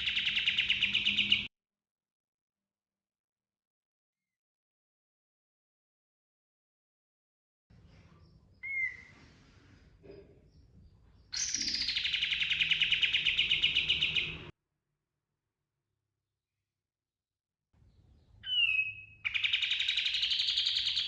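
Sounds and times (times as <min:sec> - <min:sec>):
songbird chirp and rolling trill: 0:00.0 - 0:01.5, 0:07.7 - 0:14.5, 0:17.8 - 0:21.0.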